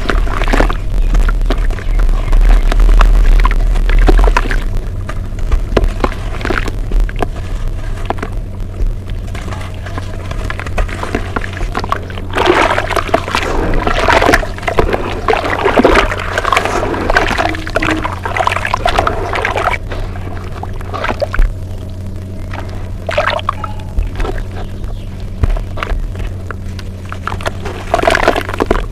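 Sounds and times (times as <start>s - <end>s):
steady low hum: 0.0s - 28.9s
wet dirt squishing and crackling: 0.0s - 28.9s.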